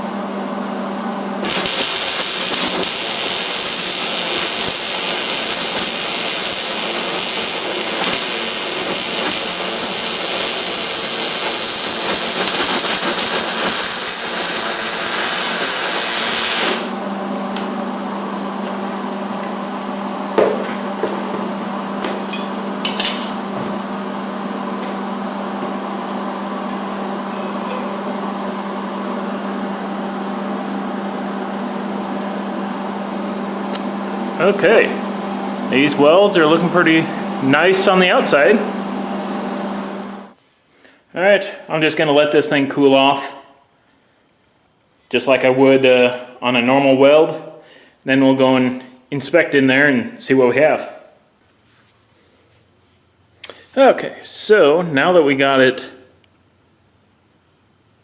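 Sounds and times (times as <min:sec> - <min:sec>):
welding arc hissing: 0:01.4 - 0:17.0, 0:35.7 - 0:38.6.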